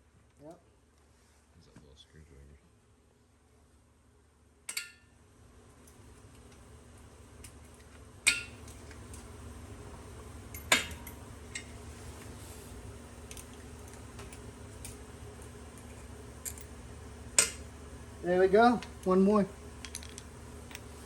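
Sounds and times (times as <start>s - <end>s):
low steady hum: 0.0s - 21.0s
metal tools clinking: 19.8s - 20.8s.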